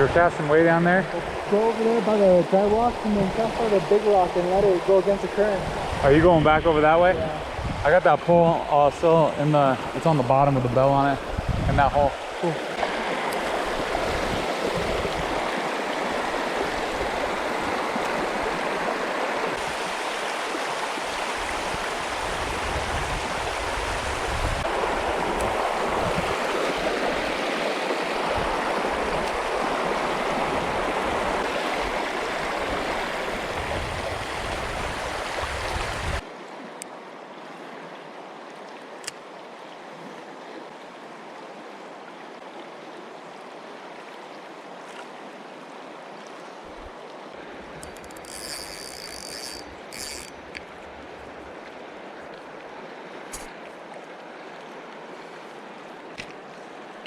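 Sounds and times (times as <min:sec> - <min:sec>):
river water rushing over rocks: 0:12.1 - 0:39.0.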